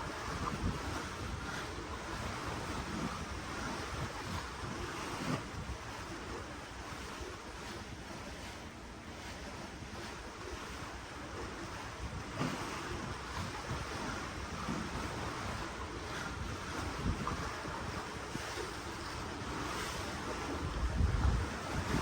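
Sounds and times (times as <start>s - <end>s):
wind on microphone: 0.0s - 8.4s, 9.4s - 22.0s
ocean waves splashing: 9.1s - 22.0s.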